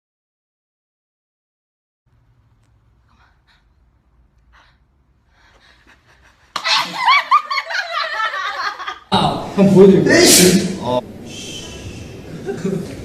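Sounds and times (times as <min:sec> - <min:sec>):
laughter: 0:05.9 - 0:09.1, 0:12.4 - 0:13.0.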